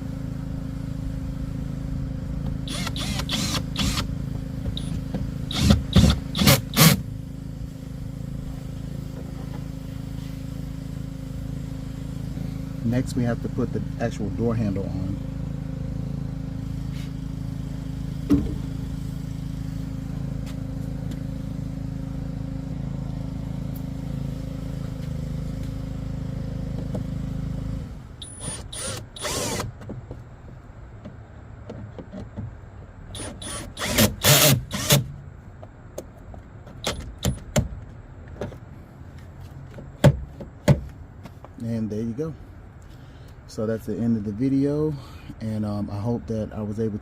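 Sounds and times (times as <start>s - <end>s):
steady low hum: 0.0s - 47.0s
power driver whirring: 2.4s - 7.1s, 27.7s - 29.8s, 33.2s - 35.2s.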